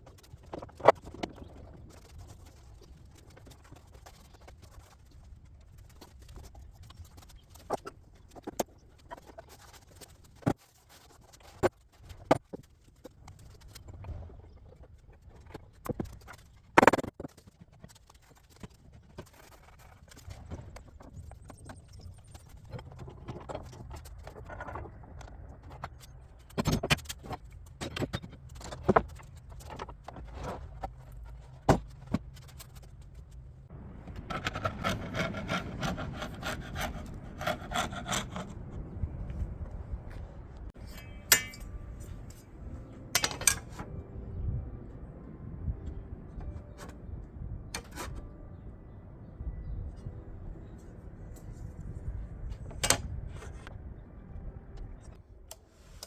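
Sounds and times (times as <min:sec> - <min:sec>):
low steady hum: 0:20.4 - 0:56.0.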